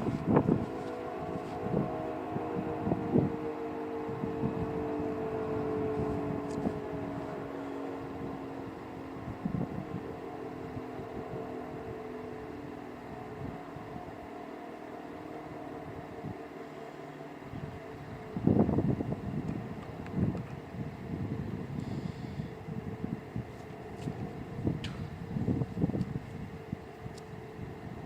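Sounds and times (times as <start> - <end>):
wind buffeting microphone: 0.0 - 14.3, 17.4 - 28.0
two-tone warning siren: 0.0 - 28.0.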